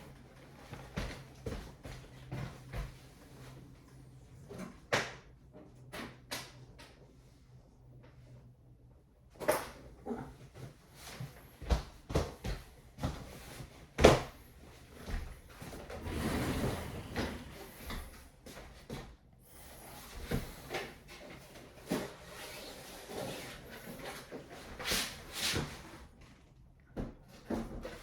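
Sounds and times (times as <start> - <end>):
rustling scrape: 15.6 - 18.2.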